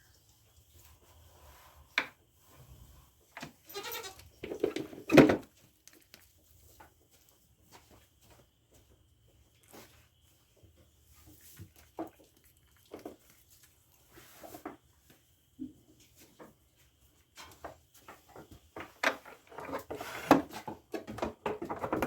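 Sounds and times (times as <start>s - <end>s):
goat bleating: 3.7s - 4.2s.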